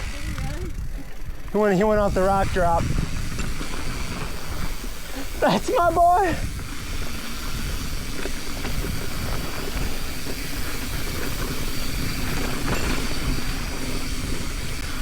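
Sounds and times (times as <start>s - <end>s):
wind rushing over microphone: 0.0s - 15.0s
tyres rumbling over dirt and rock: 0.3s - 15.0s.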